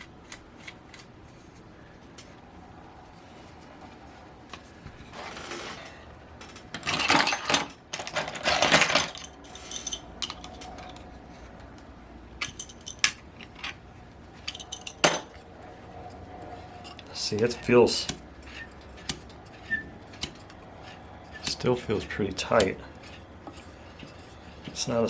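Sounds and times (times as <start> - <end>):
metal parts clattering on workbench: 5.2 - 11.0, 14.4 - 15.4.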